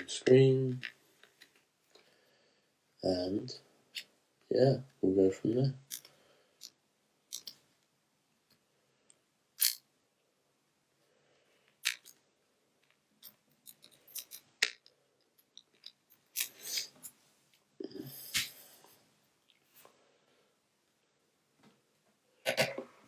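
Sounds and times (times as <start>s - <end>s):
tools and parts clicking: 5.9s - 7.6s, 9.6s - 9.8s, 11.8s - 12.2s, 12.8s - 17.2s.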